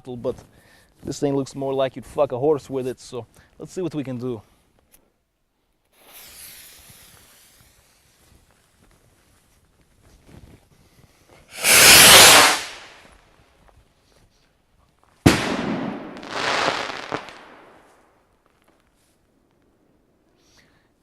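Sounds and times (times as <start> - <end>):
firework crack: 5.9 - 8.4, 11.5 - 13.0, 15.2 - 18.8
firework bang: 11.5 - 12.9, 15.3 - 17.7
rocket launch whoosh: 11.5 - 13.0.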